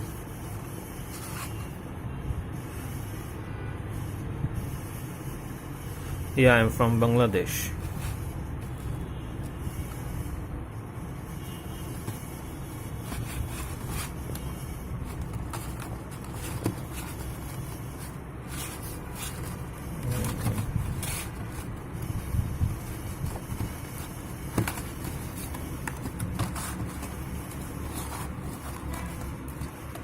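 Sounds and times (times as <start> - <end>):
packaging clicks and scrapes: 7.8 - 10.0, 11.8 - 30.0.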